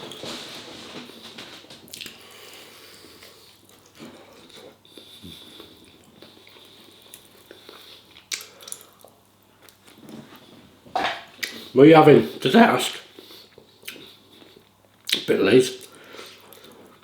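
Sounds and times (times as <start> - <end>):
person chewing food: 1.8 - 11.7, 13.2 - 15.2, 15.8 - 17.0.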